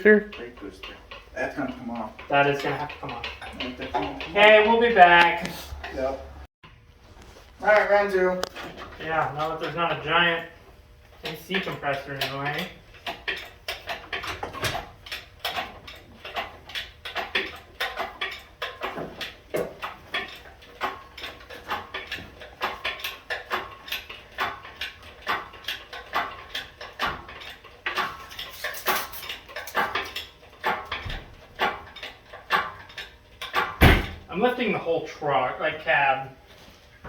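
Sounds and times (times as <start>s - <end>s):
metallic clinks and knocks: 0.0s - 6.1s, 11.2s - 34.3s.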